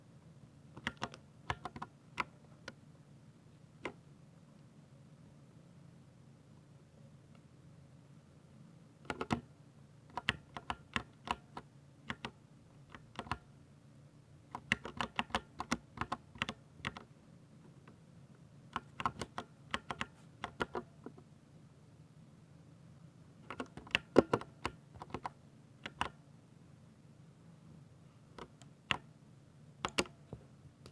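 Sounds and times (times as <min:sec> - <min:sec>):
mechanical keyboard typing: 0:00.8 - 0:02.3, 0:09.1 - 0:09.5, 0:10.1 - 0:13.4, 0:14.5 - 0:17.1, 0:18.8 - 0:20.9, 0:23.5 - 0:26.2, 0:29.8 - 0:30.2.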